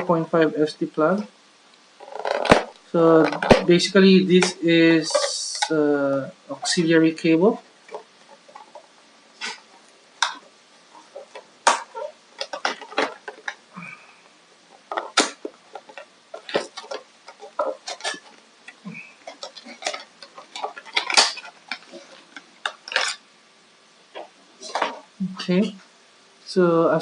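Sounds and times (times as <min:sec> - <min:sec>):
hands handling packaging: 0:02.0 - 0:05.7, 0:07.8 - 0:13.7, 0:14.8 - 0:23.2.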